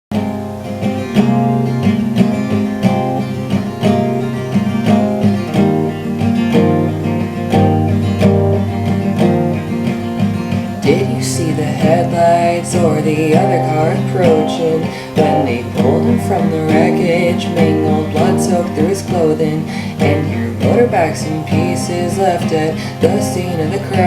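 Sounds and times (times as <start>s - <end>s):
acoustic guitar strumming: 0.1s - 24.0s.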